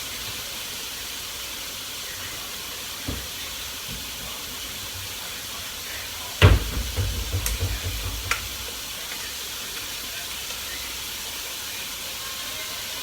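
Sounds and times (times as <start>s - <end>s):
chicken sizzling in a pan: 0.0s - 13.0s
utensil knocking on pan: 6.4s - 8.9s.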